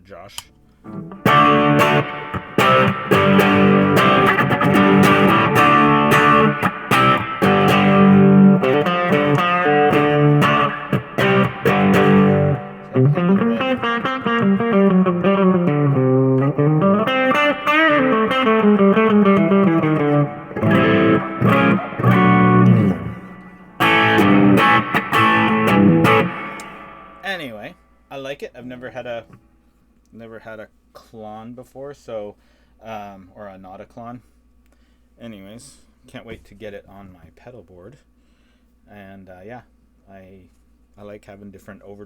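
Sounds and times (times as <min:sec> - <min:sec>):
electric guitar with overdrive: 0:00.8 - 0:27.2.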